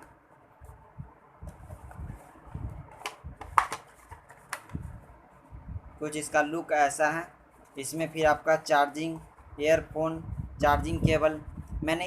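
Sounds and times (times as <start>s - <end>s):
smartphone box handling clicks: 2.9s - 4.8s.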